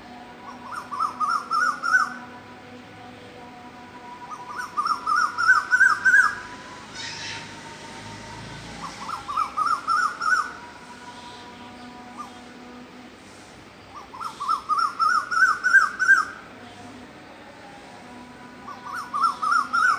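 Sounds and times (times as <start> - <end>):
cuckoo calling: 0.0 - 2.3, 4.2 - 12.4, 13.8 - 16.7, 18.6 - 19.9.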